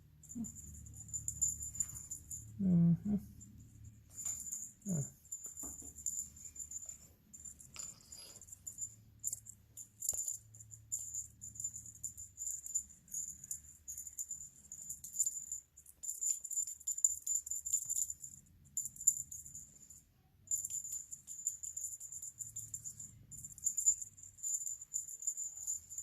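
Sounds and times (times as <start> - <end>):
small bell jingling: 0.0 - 26.0.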